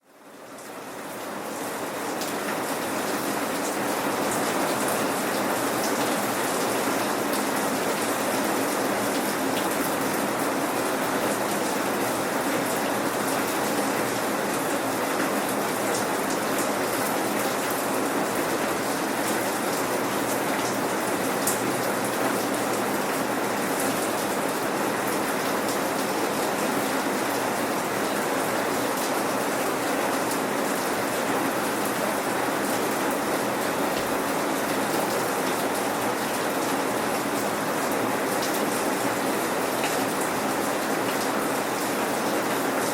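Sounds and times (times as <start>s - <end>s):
steady rain falling: 0.0s - 42.9s.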